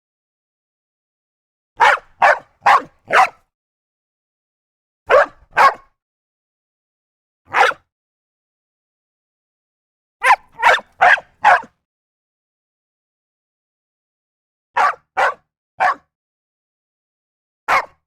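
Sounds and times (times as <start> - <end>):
dog barking: 1.8 - 3.4, 5.1 - 6.0, 7.5 - 7.9, 10.2 - 11.8, 14.8 - 16.1, 17.7 - 18.0.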